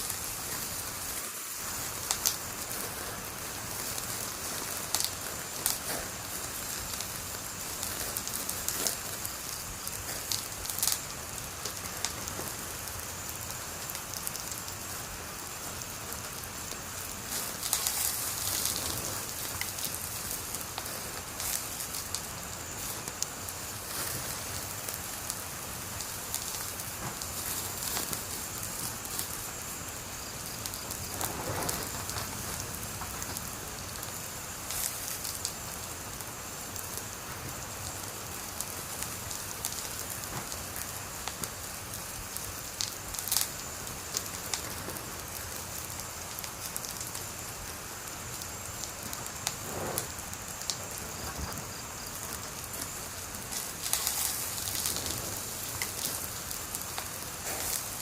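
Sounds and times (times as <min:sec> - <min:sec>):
wood fire crackling: 0:00.0 - 0:58.0.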